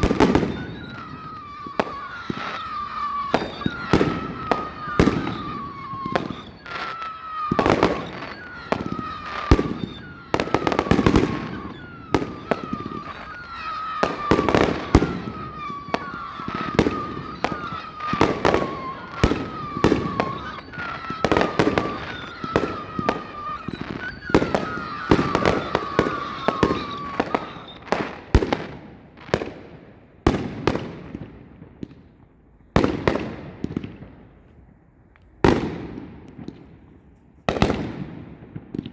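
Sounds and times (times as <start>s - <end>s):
high falling whistles: 0.0s - 28.3s
fireworks bangs and crackles: 0.0s - 38.9s.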